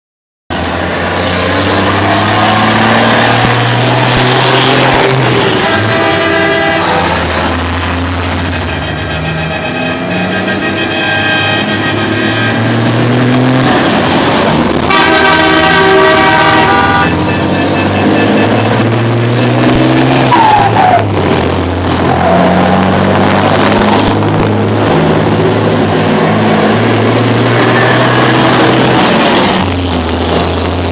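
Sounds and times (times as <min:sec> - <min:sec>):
loud vehicle horns: 0:02.0 - 0:21.2.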